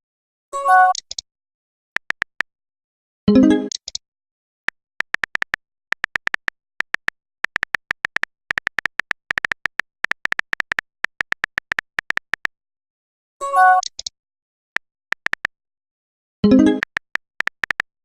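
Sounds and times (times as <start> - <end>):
phone keyboard clicks: 2.0 - 2.5, 5.0 - 12.5, 14.8 - 15.5, 16.6 - 18.0.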